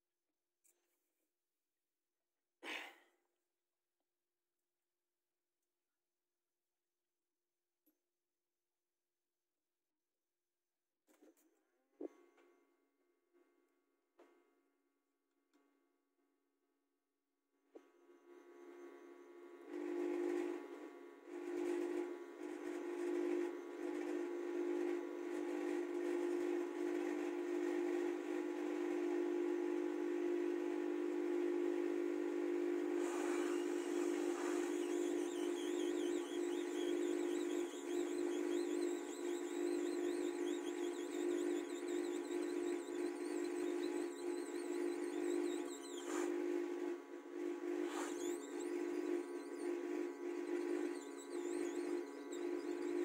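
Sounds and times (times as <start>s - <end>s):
hot-air station blowing: 18.1s - 53.0s
wavering high whistle: 19.7s - 53.0s.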